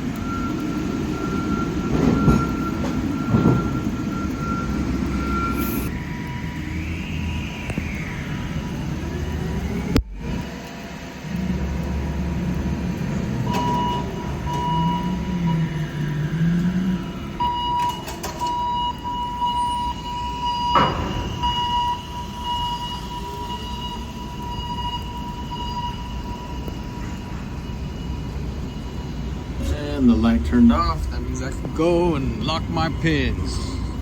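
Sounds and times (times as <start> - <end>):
crane motor rumbling: 0.0 - 34.0
warning beeper: 13.4 - 34.0.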